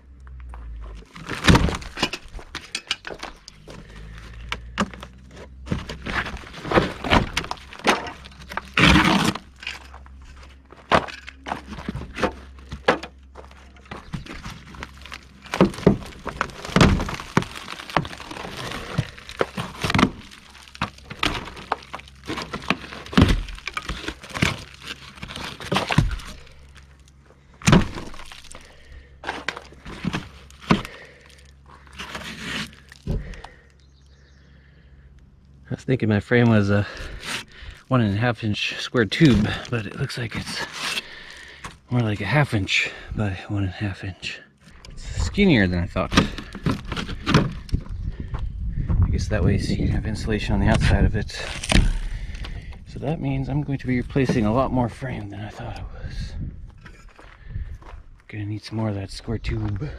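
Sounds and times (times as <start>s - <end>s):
material cracking and breaking: 0.8s - 33.7s, 44.7s - 48.0s, 50.6s - 52.8s.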